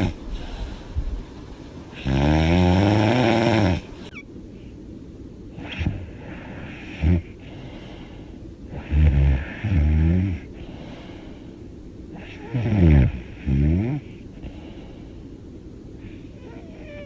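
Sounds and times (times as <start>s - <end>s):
woman snoring loudly: 2.0s - 3.9s, 12.4s - 14.0s.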